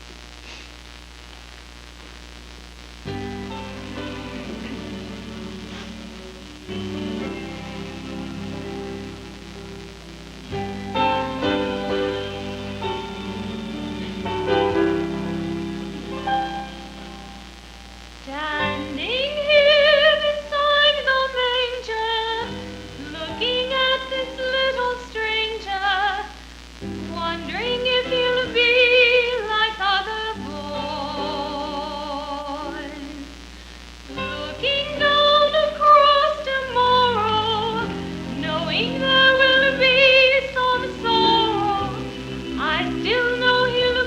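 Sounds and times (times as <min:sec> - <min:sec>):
woman singing with vibrato: 0:18.3 - 0:33.4, 0:34.1 - 0:44.0.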